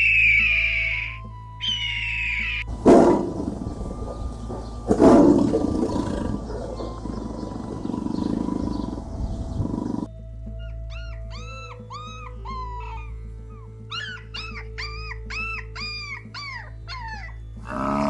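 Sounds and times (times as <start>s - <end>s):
background music: 0.0s - 18.0s
lion roaring: 5.0s - 9.0s, 17.6s - 18.0s.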